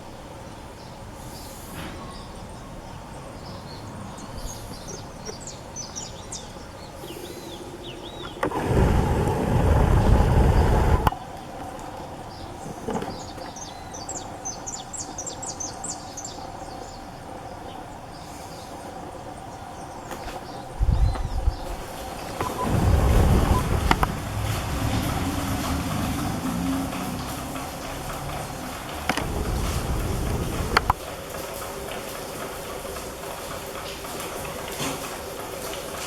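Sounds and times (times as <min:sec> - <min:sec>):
birds chirping: 0:00.0 - 0:36.0
loud rushing noise: 0:20.8 - 0:31.0.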